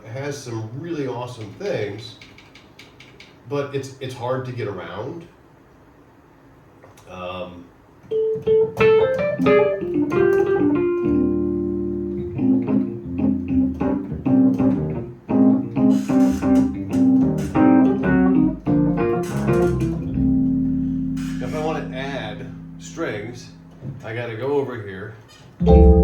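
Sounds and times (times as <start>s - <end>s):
keyboard chords and low notes: 8.2s - 24.0s, 25.6s - 26.0s.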